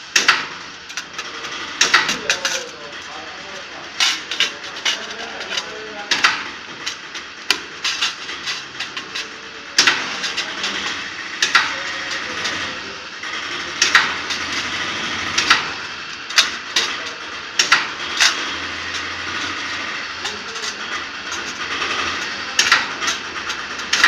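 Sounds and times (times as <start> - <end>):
spot welder snapping: 0.0 - 24.0
steady background noise: 0.0 - 24.0.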